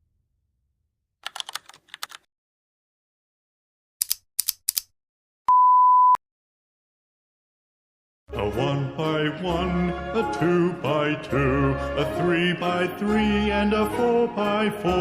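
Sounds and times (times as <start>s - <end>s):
electronic beep: 5.5s - 6.2s.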